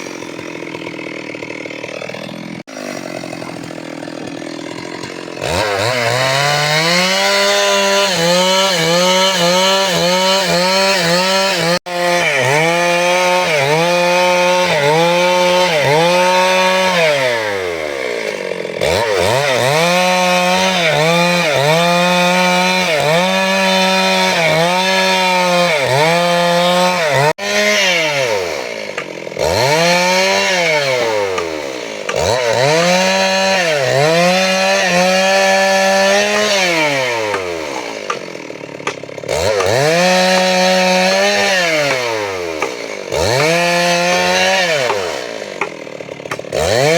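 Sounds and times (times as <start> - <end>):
chainsaw cutting wood: 0.0 - 46.9.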